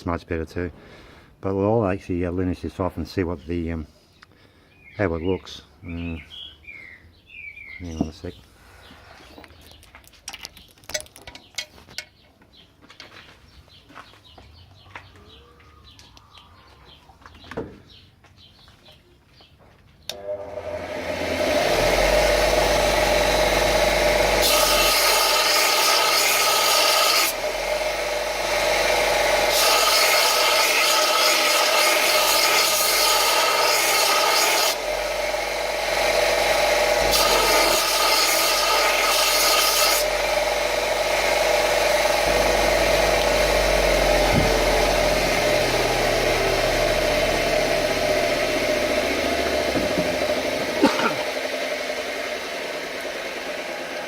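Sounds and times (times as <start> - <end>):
belt sander running: 20.1 - 54.0
brass grinding on belt: 23.1 - 27.9.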